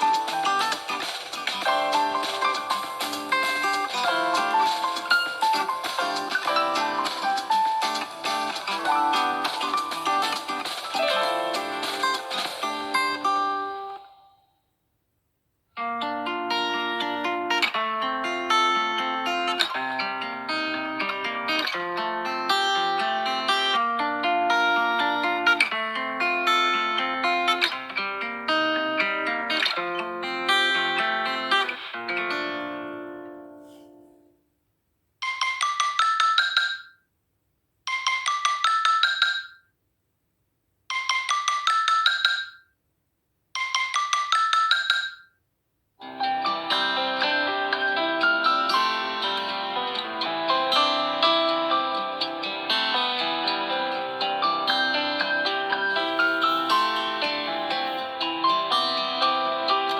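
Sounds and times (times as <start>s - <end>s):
phone ringtone melody: 0.0s - 14.5s, 35.2s - 36.9s, 37.9s - 39.6s, 40.9s - 42.6s, 43.6s - 45.3s, 46.6s - 59.9s.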